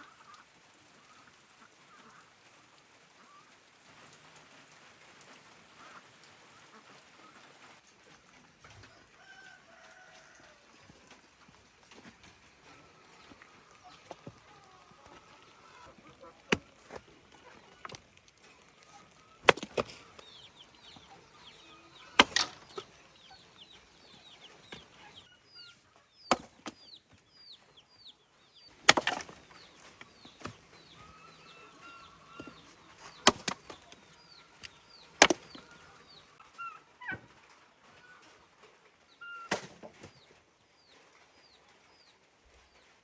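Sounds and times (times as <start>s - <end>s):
birds chirping: 8.6s - 37.3s
sharp chopping strikes: 19.4s - 20.3s, 22.2s - 22.9s, 26.3s - 26.8s, 28.9s - 30.9s, 33.2s - 33.9s, 35.2s - 35.6s.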